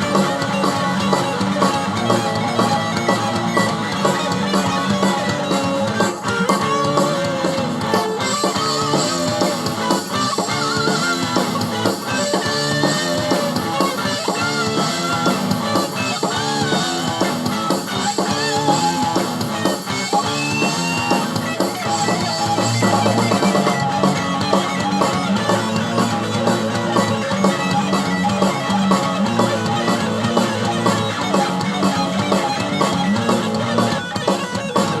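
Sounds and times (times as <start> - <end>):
rock music with guitar and drums: 0.0 - 35.0.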